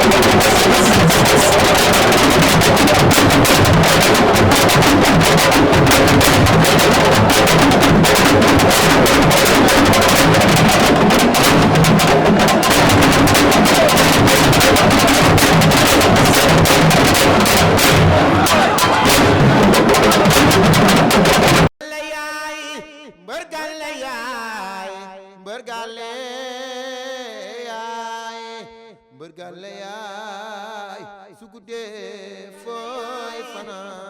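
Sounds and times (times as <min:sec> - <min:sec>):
music with fast dense drumming: 0:00.0 - 0:21.7.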